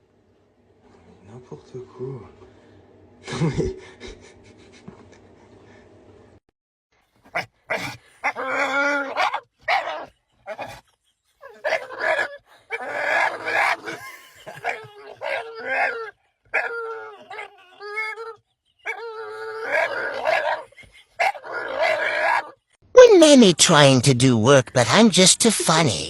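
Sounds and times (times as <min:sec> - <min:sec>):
dog howling and whining: 0:07.3 - 0:10.8, 0:11.4 - 0:22.6.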